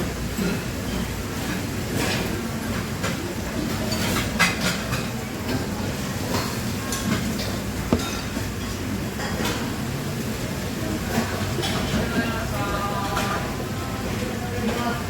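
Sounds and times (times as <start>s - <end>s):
low restaurant rumble: 0.0s - 15.0s
dishes and utensils clinking: 3.0s - 9.9s, 11.1s - 13.6s.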